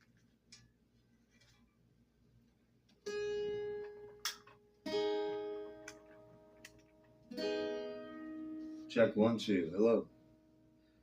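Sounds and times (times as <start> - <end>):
electric guitar chords ringing: 3.1 - 10.7.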